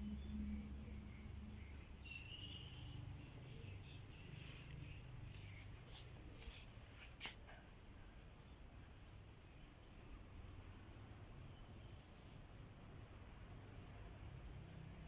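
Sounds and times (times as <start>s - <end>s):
insect chorus trilling: 0.0s - 7.4s, 8.0s - 15.0s
faint chirps: 0.0s - 8.6s.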